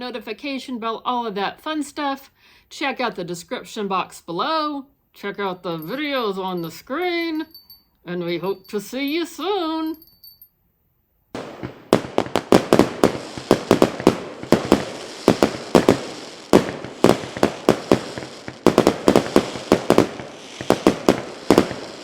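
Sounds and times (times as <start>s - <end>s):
firecrackers banging and crackling: 11.4s - 22.0s.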